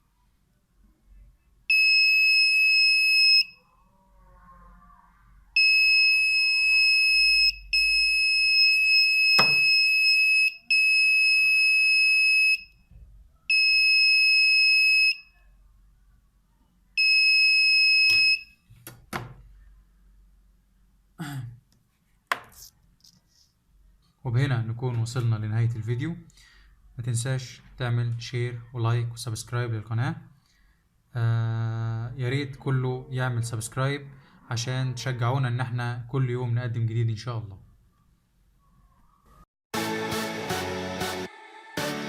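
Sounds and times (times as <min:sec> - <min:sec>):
high-pitched alarm buzzer: 0:05.6 - 0:12.6.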